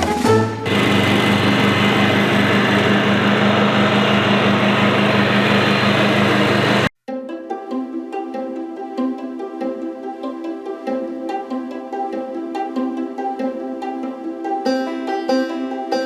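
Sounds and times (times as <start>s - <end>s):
riding lawn mower engine running: 0.6s - 6.9s.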